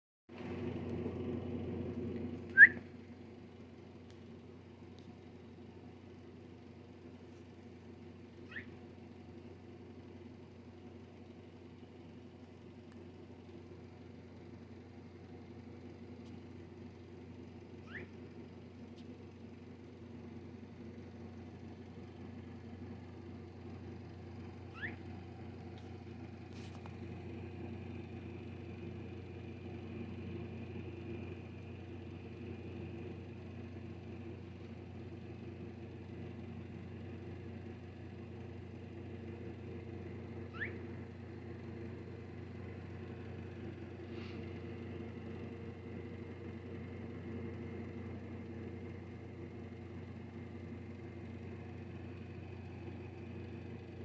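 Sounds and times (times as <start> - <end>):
steady low hum: 0.4 - 54.0
baby squirrel squeaking: 8.4 - 8.8, 17.8 - 18.1, 24.7 - 25.0, 40.5 - 40.8.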